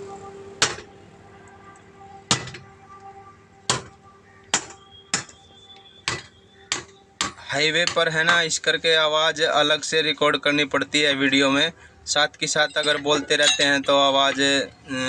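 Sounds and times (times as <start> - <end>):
sledgehammer striking metal: 0.6 - 0.9, 2.3 - 2.7.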